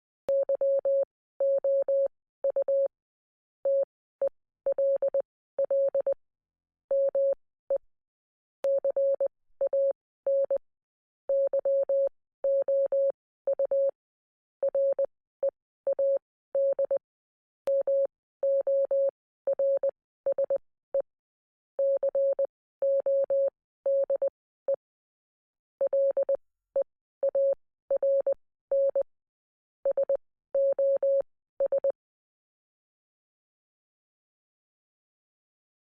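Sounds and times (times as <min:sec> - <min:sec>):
morse code beeps: 0:21.8 - 0:24.3, 0:25.9 - 0:26.4, 0:29.9 - 0:32.0.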